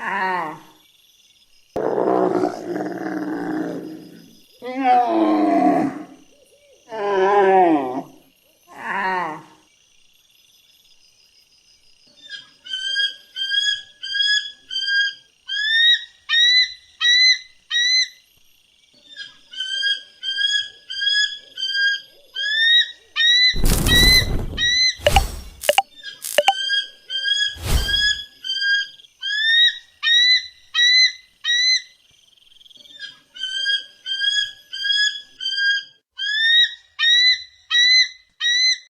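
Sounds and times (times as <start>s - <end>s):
low growl-like animal calls: 1.8s - 6.2s.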